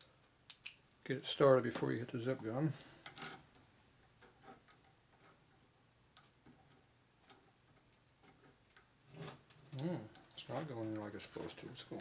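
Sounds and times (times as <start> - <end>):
faint clicks of metal parts: 0.0 - 0.8, 3.0 - 11.6.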